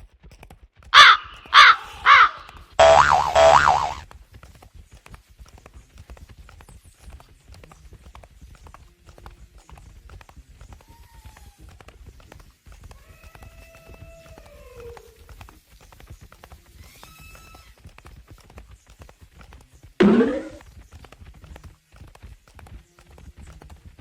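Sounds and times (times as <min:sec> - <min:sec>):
stampede of hoofbeats: 0:00.0 - 0:24.0
wavering animal call: 0:01.0 - 0:04.0.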